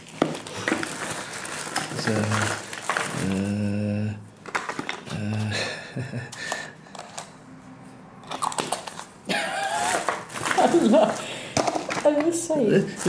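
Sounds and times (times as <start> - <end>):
person humming: 3.2 - 4.2, 5.1 - 5.8.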